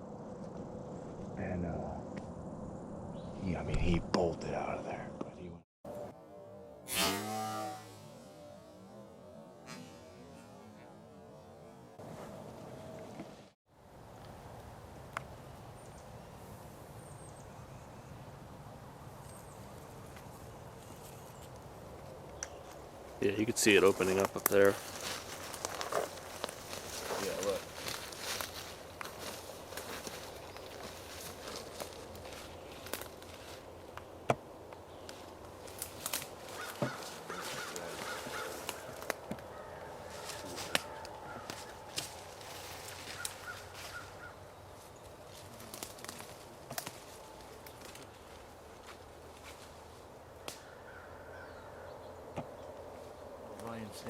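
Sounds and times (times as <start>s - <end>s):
footsteps on twigs and leaves: 20.0s - 22.9s, 23.5s - 50.7s.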